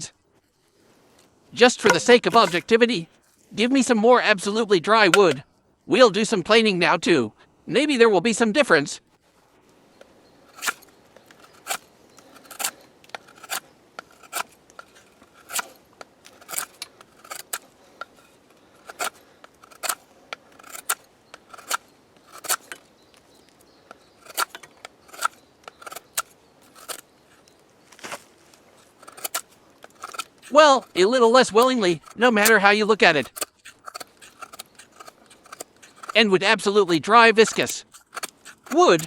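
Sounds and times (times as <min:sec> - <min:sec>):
knife planing shavings off wood: 0:01.8 - 0:02.8, 0:10.5 - 0:22.8, 0:23.9 - 0:27.0, 0:27.9 - 0:39.0.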